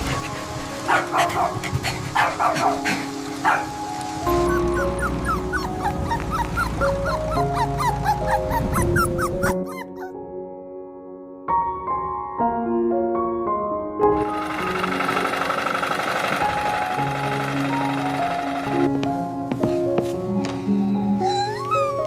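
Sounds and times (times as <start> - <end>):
puppy barking and yipping: 0.0 - 10.2
background music: 0.0 - 22.0
puppy whimpering: 4.3 - 10.2, 21.2 - 22.0.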